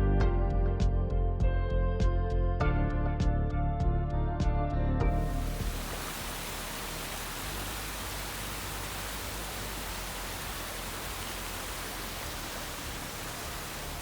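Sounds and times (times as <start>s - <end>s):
steady rushing noise: 5.2s - 14.0s.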